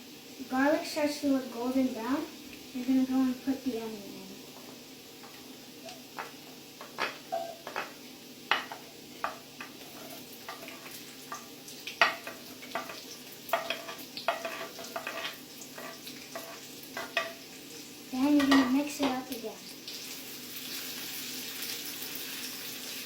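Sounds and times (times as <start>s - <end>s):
onion frying in oil: 0.0s - 23.0s
utensil scraping and clicking on pan: 6.2s - 17.4s.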